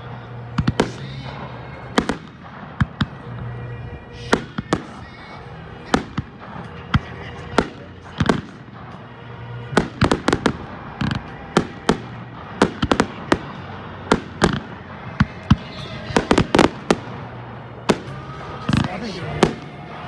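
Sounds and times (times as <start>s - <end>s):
fireworks bursting with sharp bangs: 0.0s - 20.0s.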